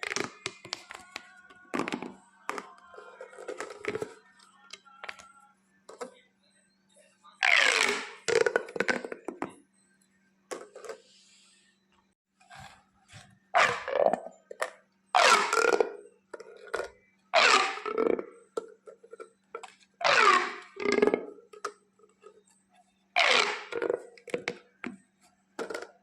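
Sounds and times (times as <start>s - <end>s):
plastic pop tubes zipping: 0.0s - 2.7s, 7.4s - 9.4s, 13.6s - 18.3s, 20.0s - 21.7s, 23.2s - 25.0s.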